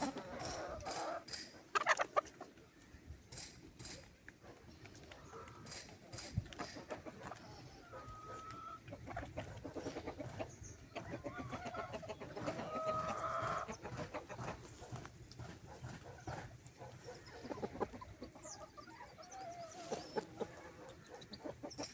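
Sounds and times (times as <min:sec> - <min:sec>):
chicken drawn-out calls: 0:00.0 - 0:02.5, 0:05.1 - 0:21.9
chickens clucking: 0:00.0 - 0:21.9.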